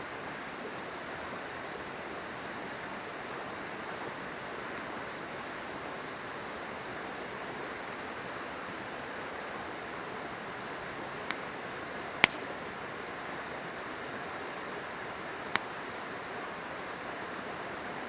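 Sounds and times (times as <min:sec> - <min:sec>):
river water rushing: 0:00.0 - 0:18.0
campfire crackling and popping: 0:11.2 - 0:12.6.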